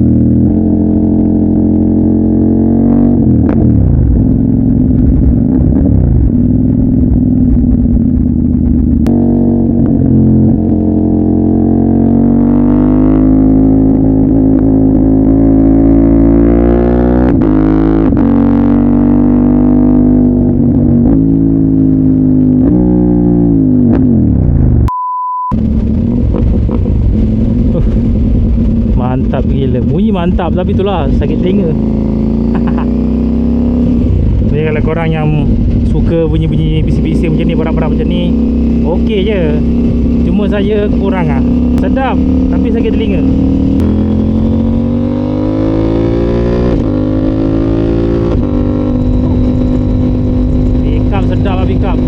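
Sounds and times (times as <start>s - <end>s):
motorcycle engine revving: 0.0s - 24.9s, 25.5s - 52.0s
short steady beep: 24.9s - 25.6s.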